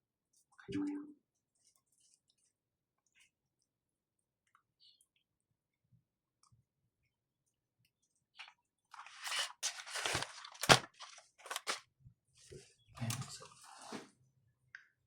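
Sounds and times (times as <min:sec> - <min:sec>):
crinkly rustling of objects: 0:01.3 - 0:03.7, 0:08.0 - 0:11.8.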